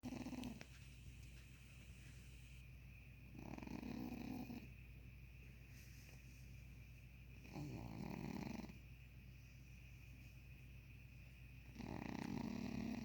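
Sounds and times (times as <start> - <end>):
cat snoring: 0.0 - 0.6, 3.4 - 4.7, 7.4 - 8.8, 11.7 - 13.0.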